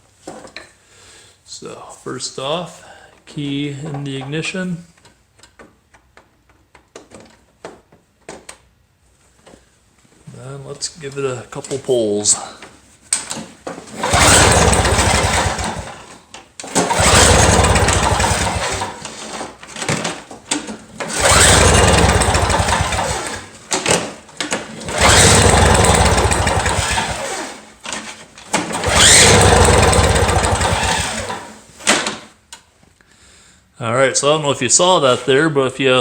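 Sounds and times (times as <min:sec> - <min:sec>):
pull-starter engine cranking: 0:13.9 - 0:20.1, 0:21.0 - 0:24.0, 0:24.6 - 0:27.7, 0:28.5 - 0:32.1.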